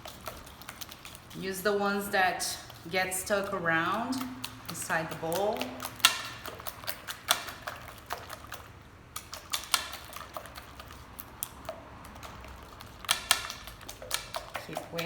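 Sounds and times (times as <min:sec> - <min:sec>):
whisk clicking against bowl: 0:00.0 - 0:15.0.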